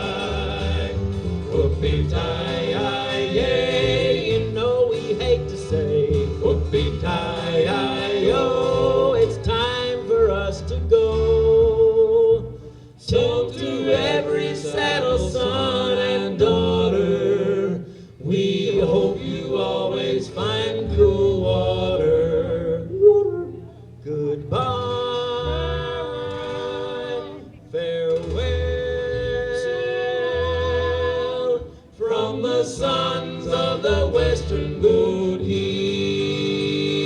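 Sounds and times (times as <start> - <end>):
bass notes: 0.0 - 37.0
group singing wordless harmony: 0.0 - 37.0.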